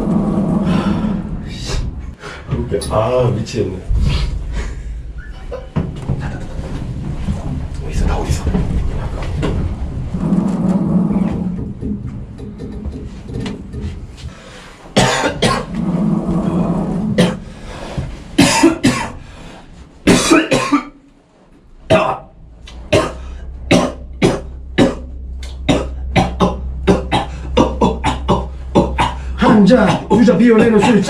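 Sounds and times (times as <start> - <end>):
low steady hum: 0.0 - 31.0
person coughing: 15.0 - 15.7, 18.4 - 19.2, 20.1 - 21.0, 22.9 - 31.0.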